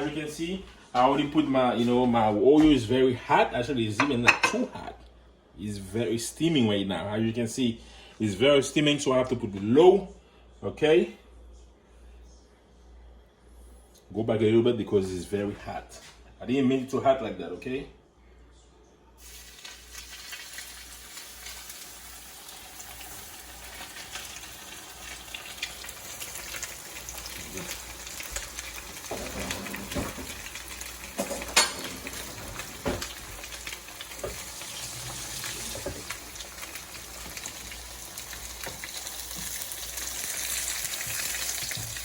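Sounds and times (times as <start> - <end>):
fish sizzling in hot oil: 19.2 - 42.0.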